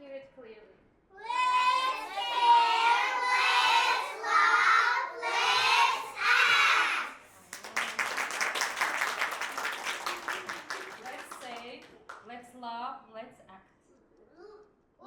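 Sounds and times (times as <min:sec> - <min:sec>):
children chanting: 0:01.2 - 0:07.3
audience clapping: 0:07.4 - 0:12.3.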